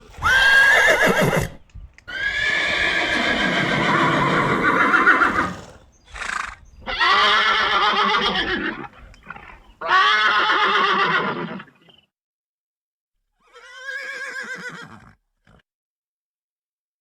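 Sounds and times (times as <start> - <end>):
horse breathing: 0.0 - 3.4, 5.1 - 6.9
horse neighing: 0.0 - 11.8, 13.4 - 15.2.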